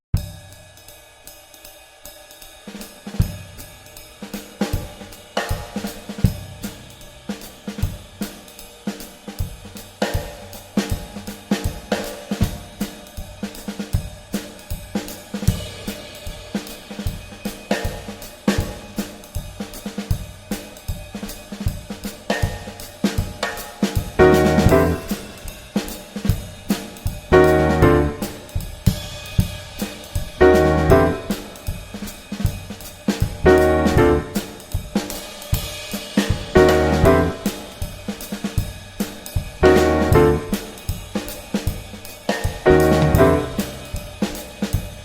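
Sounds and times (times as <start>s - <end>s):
drum kit beat with cymbals: 0.1s - 45.0s.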